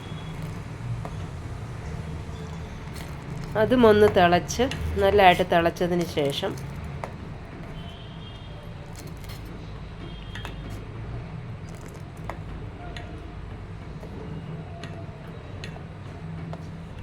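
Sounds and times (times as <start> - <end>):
liquid boiling with small pops: 11.6 - 17.0.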